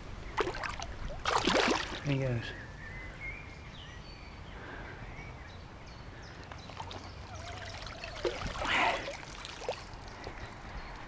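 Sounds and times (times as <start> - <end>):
loud splash: 0.4 - 2.0
lake water sloshing and splashing: 0.4 - 2.2, 6.4 - 11.0.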